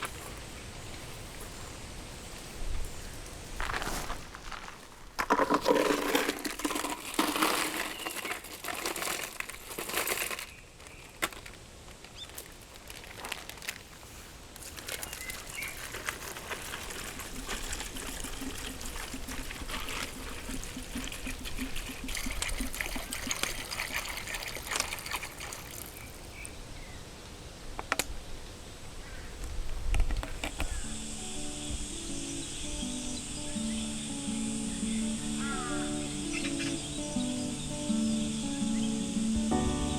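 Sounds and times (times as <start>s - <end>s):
water pouring and trickling: 5.2s - 10.6s, 14.6s - 26.5s.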